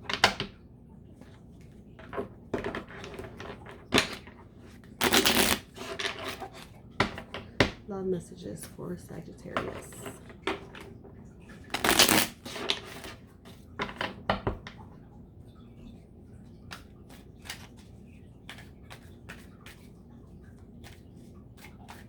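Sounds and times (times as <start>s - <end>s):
cards clicking and rustling: 1.6s - 7.8s, 9.6s - 14.6s, 16.7s - 22.0s
cards riffle shuffling: 4.8s - 6.8s, 11.7s - 13.2s, 16.7s - 19.9s.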